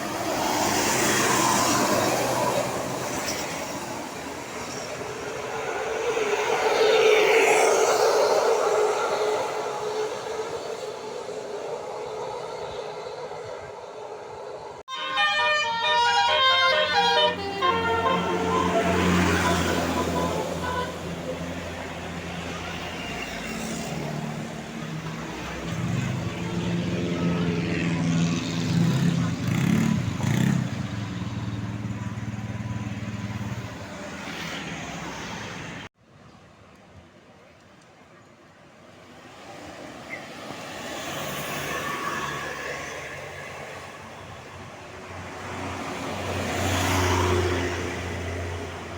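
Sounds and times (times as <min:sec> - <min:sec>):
road traffic noise: 0:00.0 - 0:48.9
bus engine humming: 0:08.3 - 0:23.2
multi-tone musical bus horn: 0:14.9 - 0:21.6.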